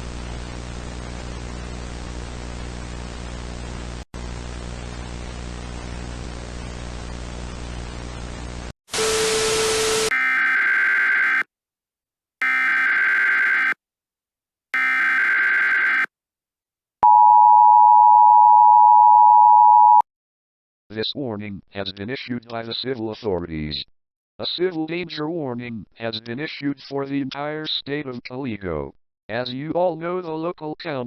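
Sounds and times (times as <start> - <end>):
data tone bursts: 9.0 - 11.4, 12.4 - 13.8, 14.8 - 16.1, 17.0 - 20.0
two-tone attention signal: 14.8 - 16.1, 17.0 - 20.0.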